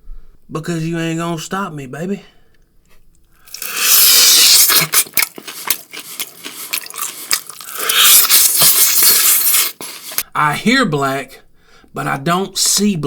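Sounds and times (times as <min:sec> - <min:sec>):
slurping: 0:03.4 - 0:10.2
wet chewing and smacking: 0:03.4 - 0:10.2.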